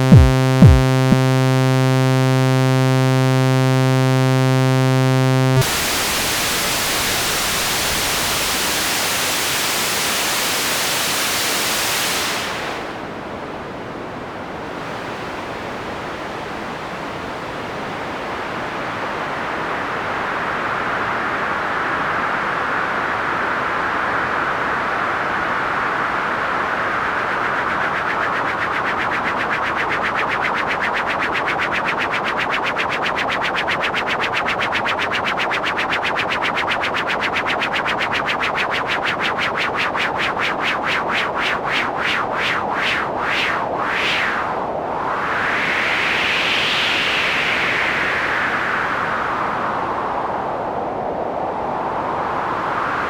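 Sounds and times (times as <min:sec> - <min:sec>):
synthesizer whoosh: 0:00.0 - 0:01.4
synthesizer wind hiss: 0:05.6 - 0:53.0.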